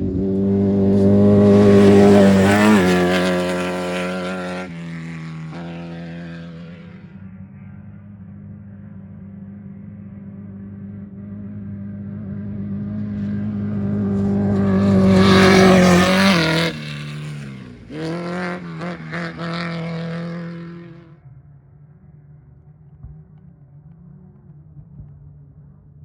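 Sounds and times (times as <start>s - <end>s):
engine revving: 0.0s - 7.4s, 9.7s - 21.2s
race vehicle engine passing: 0.0s - 8.5s, 9.2s - 26.0s.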